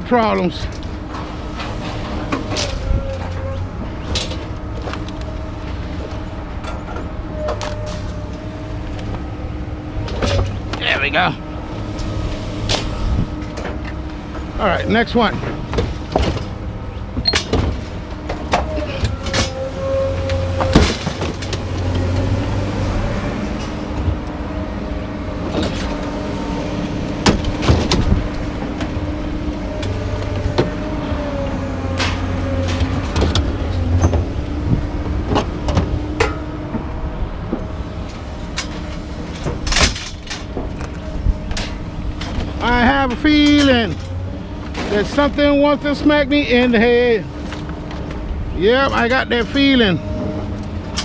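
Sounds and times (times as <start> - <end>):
steady mechanical hum: 0.0 - 51.0
metal parts clanking: 17.2 - 21.7, 38.0 - 45.5.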